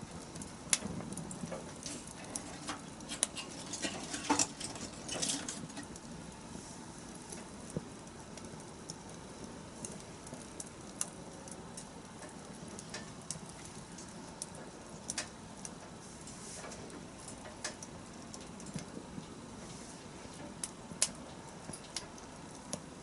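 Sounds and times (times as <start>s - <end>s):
bonfire hissing: 0.0s - 23.0s
fire crackling and popping: 0.0s - 23.0s.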